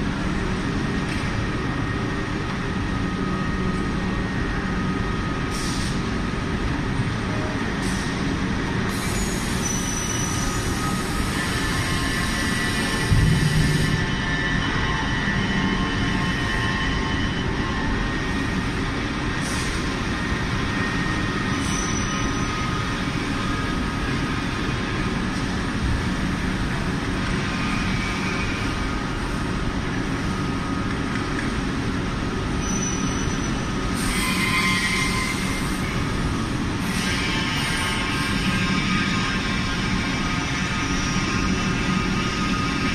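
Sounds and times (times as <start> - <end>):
bending machine rumbling: 12.6 - 16.1.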